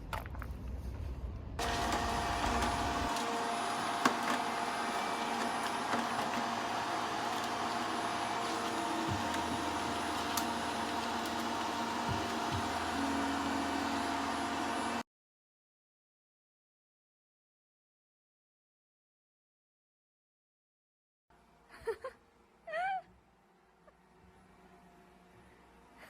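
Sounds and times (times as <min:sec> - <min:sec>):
small motor whining: 0:01.6 - 0:15.0.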